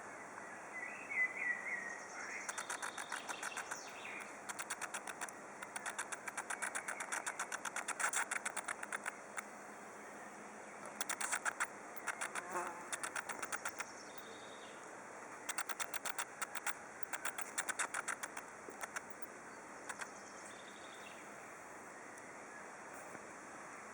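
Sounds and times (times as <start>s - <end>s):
spider clicking: 2.4s - 9.5s, 10.8s - 14.3s, 15.4s - 19.3s, 19.9s - 20.1s.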